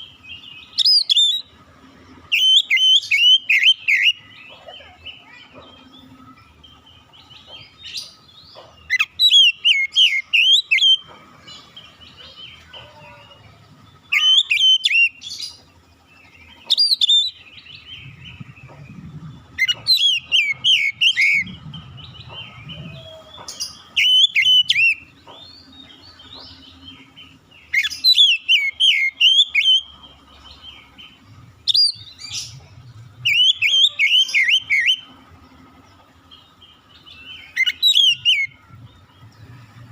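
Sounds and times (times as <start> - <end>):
bird singing warbling whistles: 0.8 - 1.5, 2.3 - 4.3, 8.9 - 11.1, 14.1 - 15.2, 16.7 - 17.4, 18.0 - 25.1, 27.7 - 29.9, 31.7 - 32.5, 33.2 - 35.1, 37.3 - 38.6.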